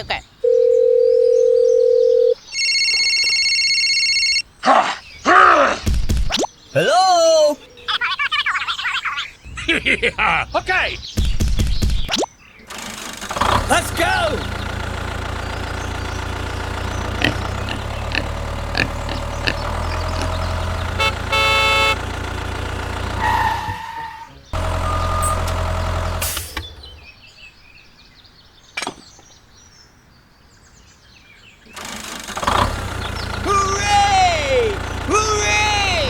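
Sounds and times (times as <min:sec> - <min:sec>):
tractor engine droning: 0:12.7 - 0:27.2, 0:31.7 - 0:36.0
horn honking: 0:13.4 - 0:27.0, 0:32.4 - 0:36.0.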